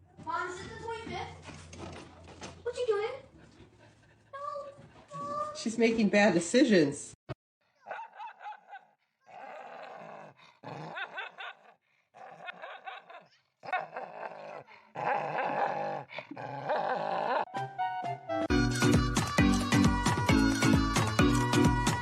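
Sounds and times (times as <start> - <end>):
dog making drawn-out vocal sounds: 9.2 - 17.5.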